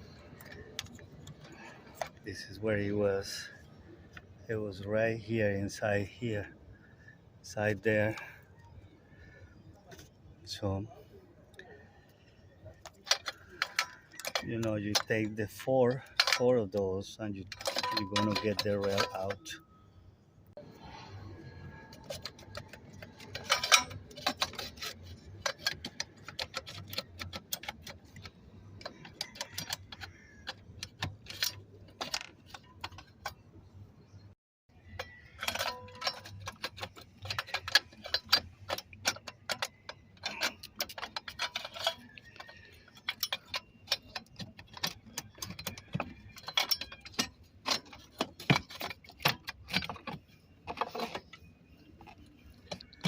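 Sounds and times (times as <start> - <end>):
metallic clicks and clinks: 12.8 - 19.7, 21.6 - 33.5, 34.8 - 53.0.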